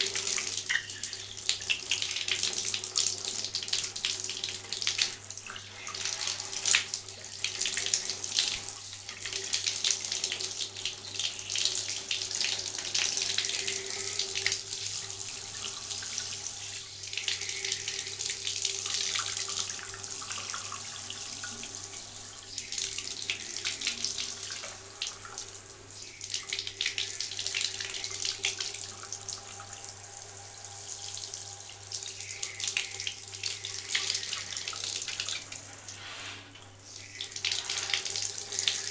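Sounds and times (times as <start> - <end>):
shower spray splashing on hand: 37.5 - 38.2.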